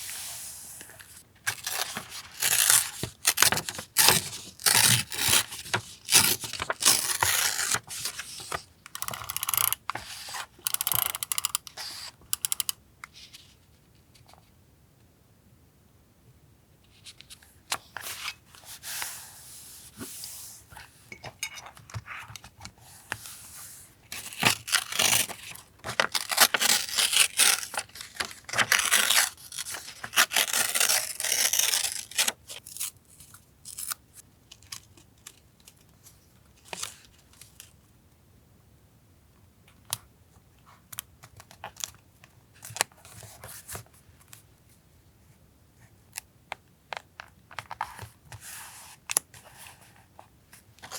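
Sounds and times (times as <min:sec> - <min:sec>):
paper tearing and rustling: 0:01.5 - 0:08.6, 0:24.2 - 0:32.9.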